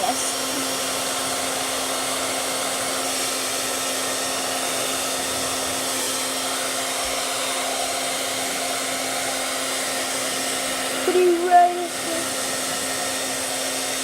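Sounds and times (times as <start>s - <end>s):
hairdryer blowing: 0.0s - 14.0s.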